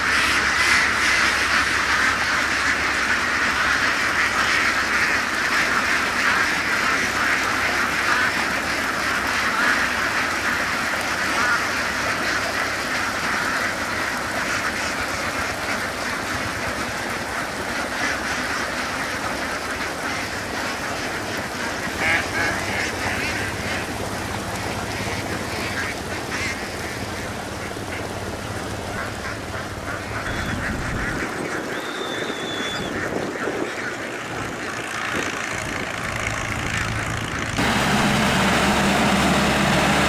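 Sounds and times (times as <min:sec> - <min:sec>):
ducks quacking: 0:00.0 - 0:40.0
steady low hum: 0:35.6 - 0:40.0.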